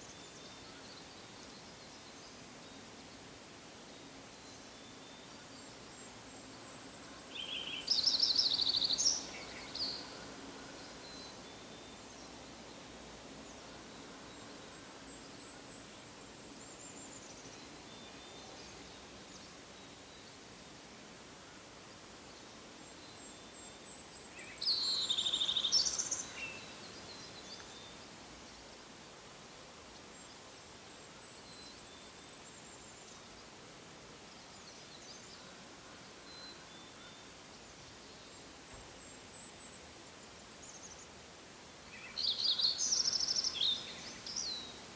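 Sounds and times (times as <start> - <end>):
soft forest hiss: 0.0 - 44.9
birds chirping: 23.5 - 28.6.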